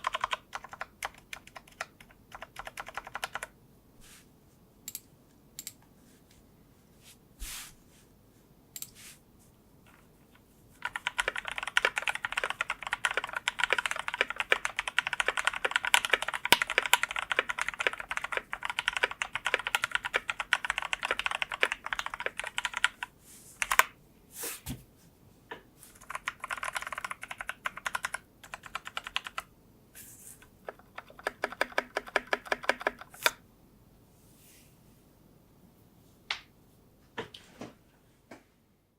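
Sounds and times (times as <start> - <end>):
mechanical keyboard typing: 0.0 - 3.5, 10.8 - 23.9, 26.0 - 29.5, 30.6 - 33.4.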